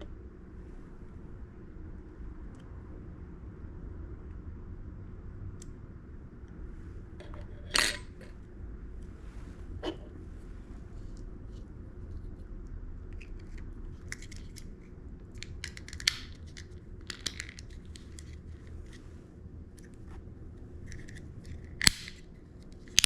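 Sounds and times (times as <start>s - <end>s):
small plastic parts clicking: 15.3s - 18.4s, 20.8s - 23.0s.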